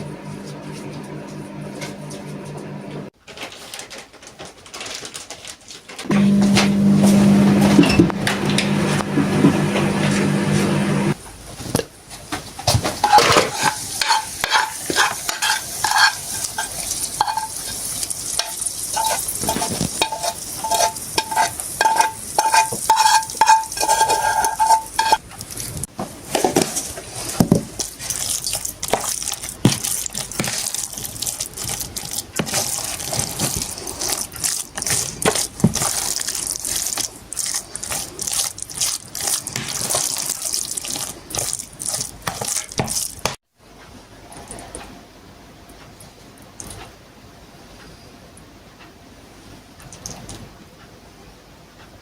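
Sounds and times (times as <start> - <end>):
utensil clinking against pot: 13.0 - 17.8, 18.4 - 25.2.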